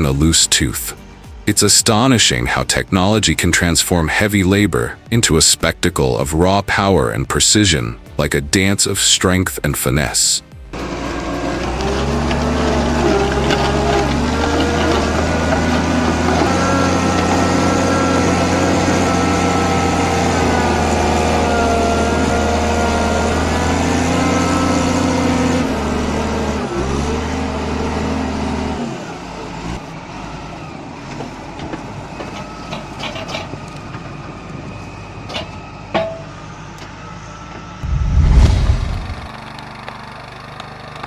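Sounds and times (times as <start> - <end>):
heavy machine engine running: 10.6 - 35.9, 37.0 - 40.5.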